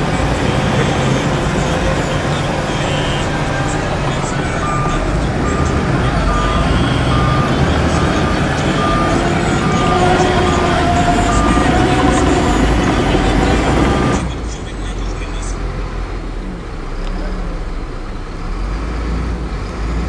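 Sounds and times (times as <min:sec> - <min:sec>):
reversing alarm beeping: 0:00.0 - 0:15.6
diesel engines rumbling: 0:00.0 - 0:20.0.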